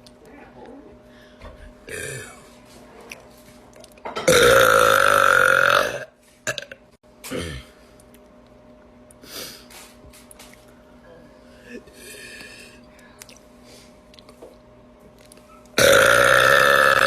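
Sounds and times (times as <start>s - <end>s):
loud long burp: 1.9s - 2.4s, 4.2s - 7.6s, 15.8s - 17.0s.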